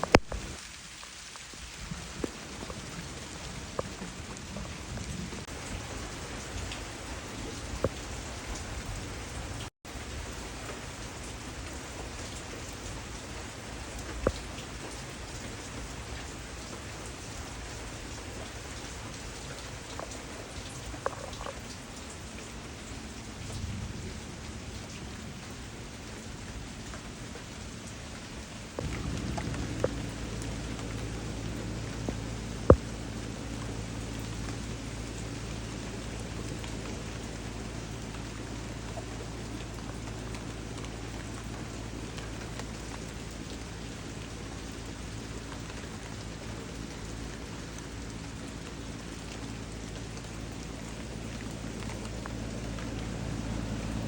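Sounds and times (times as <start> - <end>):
rain falling on leaves: 0.0 - 54.0
raindrops ticking: 0.0 - 54.0
low rumble: 23.2 - 54.0.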